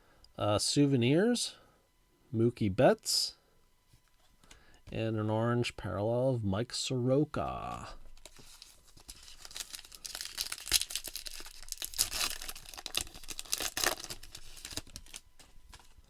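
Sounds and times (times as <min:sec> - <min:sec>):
cards rustling: 0:07.6 - 0:16.0
plastic wrapper tearing and crinkling: 0:08.1 - 0:16.0.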